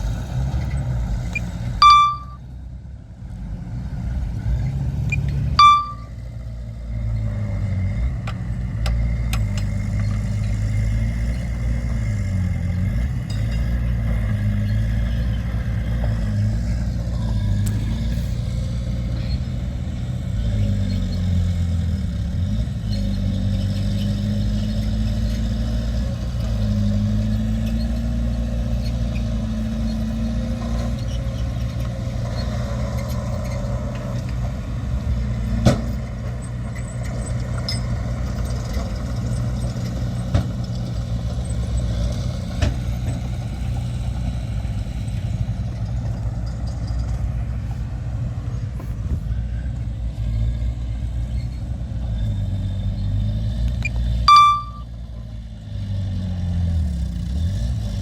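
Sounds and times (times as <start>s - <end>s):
heavy diesel machinery running: 0.0s - 55.8s
sharp metallic knocks: 1.8s - 2.4s, 5.6s - 6.1s, 54.3s - 54.8s.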